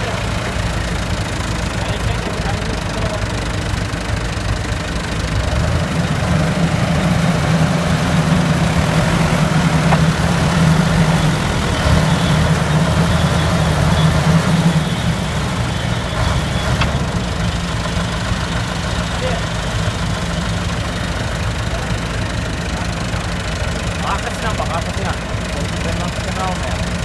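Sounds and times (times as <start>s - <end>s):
vehicle engine running: 0.0s - 27.0s.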